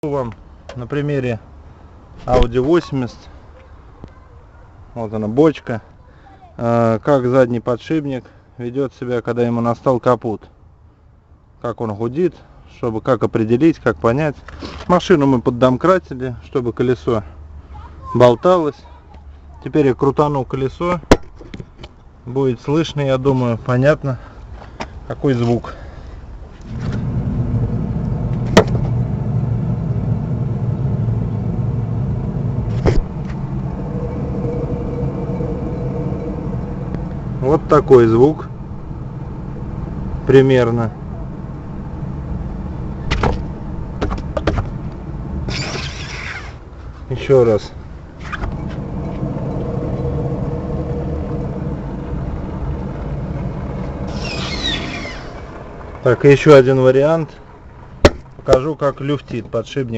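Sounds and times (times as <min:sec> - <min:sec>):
wheel bearing humming: 0:26.5 - 0:46.7, 0:47.8 - 0:56.4
sharp knocks: 0:28.4 - 0:28.8, 0:43.1 - 0:44.7, 0:58.0 - 0:58.6
faint steady tone: 0:33.2 - 0:40.2.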